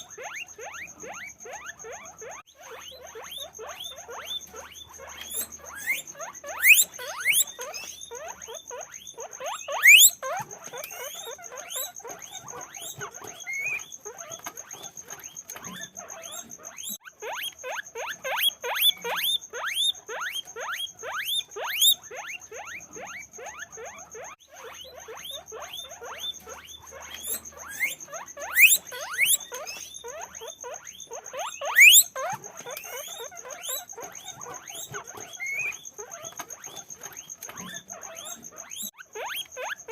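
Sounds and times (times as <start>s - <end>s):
guinea pigs squeaking: 0.0s - 39.9s.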